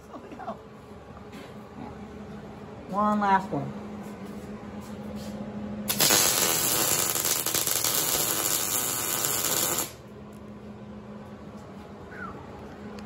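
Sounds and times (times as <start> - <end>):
welding arc crackling: 5.9 - 10.0.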